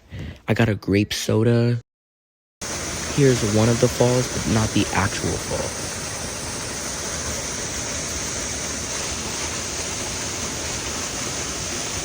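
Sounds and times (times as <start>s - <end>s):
waterfall rushing: 2.6s - 12.0s.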